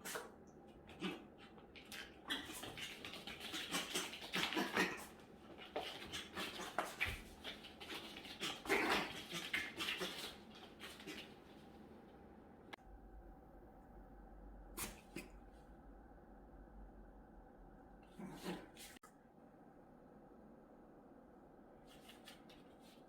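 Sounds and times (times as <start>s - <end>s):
puppy making scratchy sounds: 0.9s - 11.7s, 18.1s - 19.0s.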